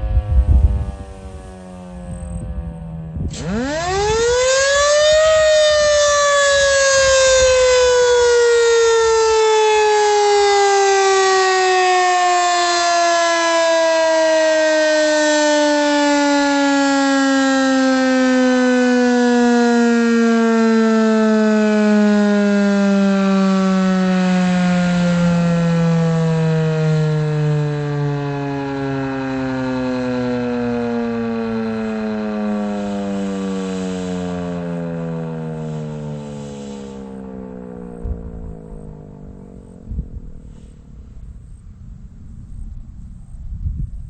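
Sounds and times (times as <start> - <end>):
warning siren wail: 0.0 - 44.0.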